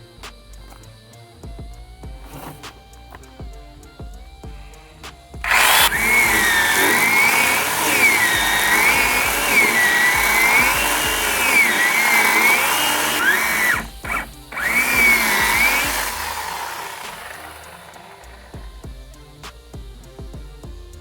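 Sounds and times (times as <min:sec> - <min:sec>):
music: 0:00.0 - 0:21.0
chainsaw cutting wood: 0:02.2 - 0:03.5, 0:05.1 - 0:19.7.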